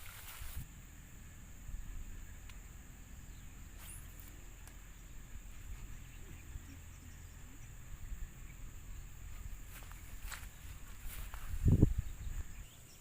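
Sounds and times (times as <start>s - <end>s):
insects chirring: 0.0s - 13.0s
low rumble: 0.4s - 12.9s.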